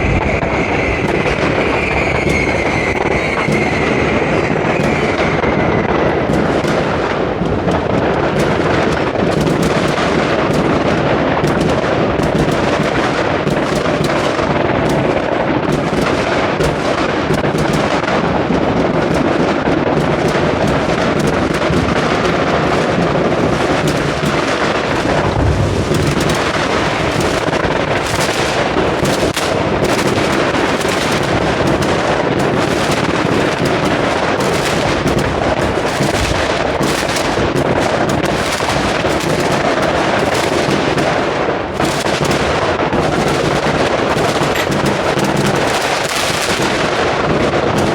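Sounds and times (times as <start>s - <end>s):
fireworks bangs and crackling: 0.0s - 47.9s.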